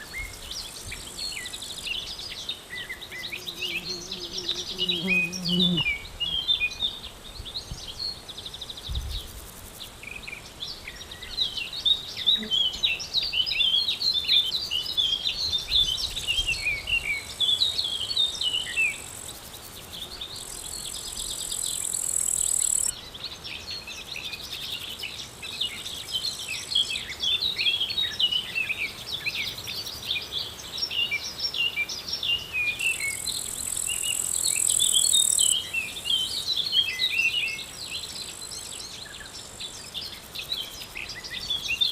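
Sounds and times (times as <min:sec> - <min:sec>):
insect buzzing: 0:00.0 - 0:06.6, 0:09.0 - 0:10.4, 0:11.8 - 0:22.9, 0:32.0 - 0:41.9
small birds chirping: 0:00.0 - 0:41.9.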